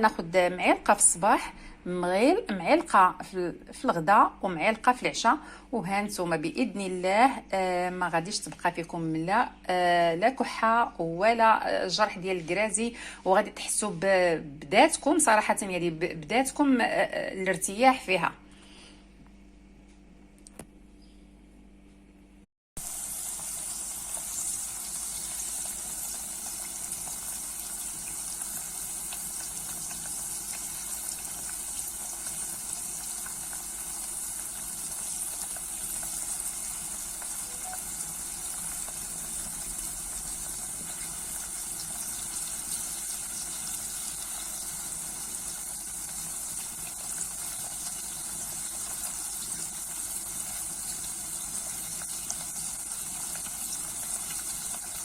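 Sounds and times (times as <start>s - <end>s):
oil sizzling in a saucepan: 22.8s - 55.0s.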